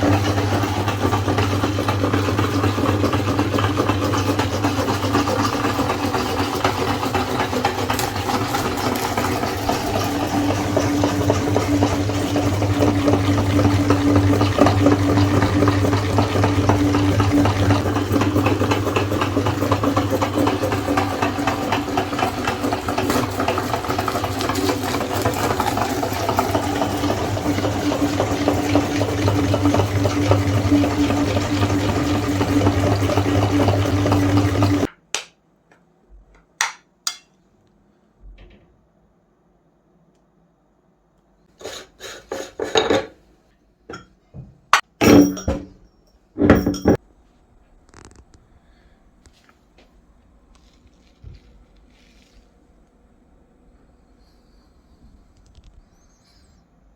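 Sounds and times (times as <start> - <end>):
electric meat grinder grinding: 0.0 - 34.9.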